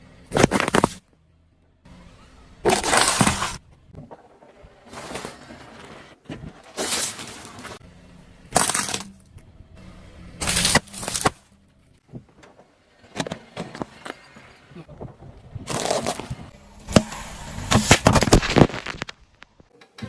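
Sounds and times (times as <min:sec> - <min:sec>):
objects crunching under tyre: 0:00.2 - 0:01.2, 0:02.0 - 0:07.8, 0:08.4 - 0:09.5, 0:10.4 - 0:19.7
sharp cracks: 0:15.6 - 0:19.7.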